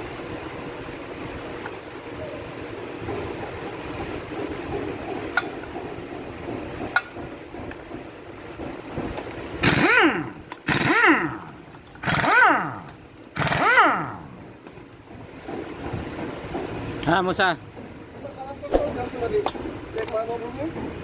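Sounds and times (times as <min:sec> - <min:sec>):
low hum: 0:00.0 - 0:21.0
small motor revving whine: 0:09.6 - 0:14.3.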